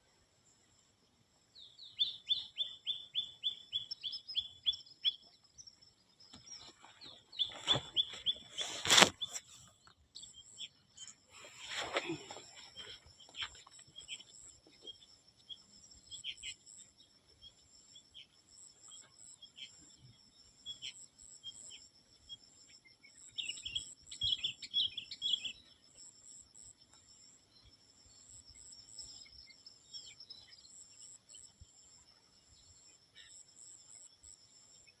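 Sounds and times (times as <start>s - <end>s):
birds chirping: 1.6s - 19.8s.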